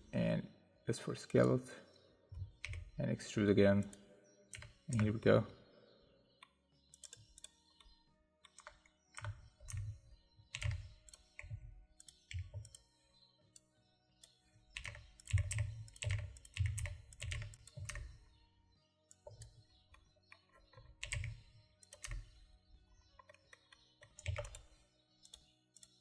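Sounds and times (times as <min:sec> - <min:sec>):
keyboard keys typing: 0:02.3 - 0:03.0, 0:03.8 - 0:05.4, 0:07.0 - 0:12.9, 0:14.2 - 0:18.4, 0:19.1 - 0:22.5, 0:23.1 - 0:26.0.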